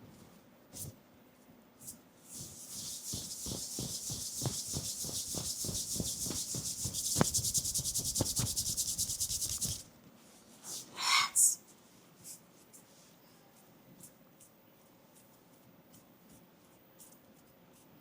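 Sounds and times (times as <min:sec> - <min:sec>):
hands rubbing through hair: 0:02.3 - 0:09.8.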